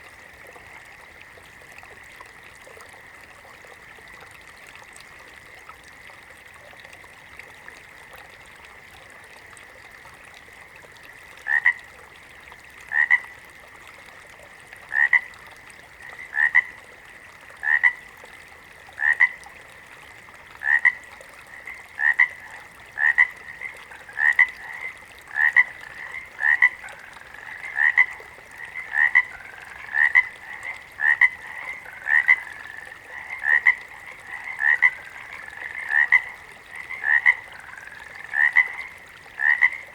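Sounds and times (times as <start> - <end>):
frogs croaking: 10.6 - 13.6, 14.9 - 18.2, 19.0 - 19.6, 20.5 - 39.9.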